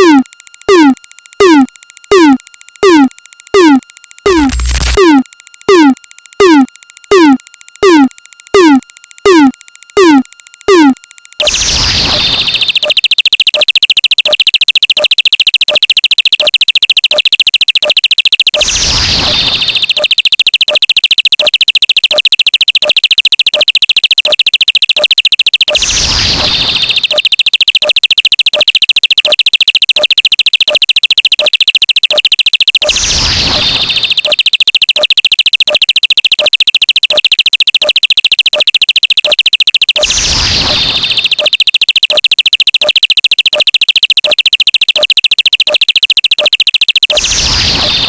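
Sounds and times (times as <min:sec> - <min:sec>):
falling synthesized chirp: 0:00.0 - 0:14.4, 0:32.8 - 0:35.1, 0:39.2 - 0:43.0
buzzy high synth tone: 0:00.0 - 0:15.1, 0:17.8 - 0:20.8, 0:32.8 - 0:35.0, 0:46.5 - 0:48.0
steady electronic tick: 0:00.0 - 0:48.0.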